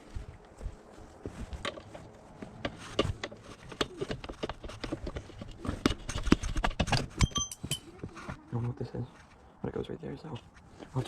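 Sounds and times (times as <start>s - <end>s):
metal clicks and knocks of tools: 3.0s - 7.9s.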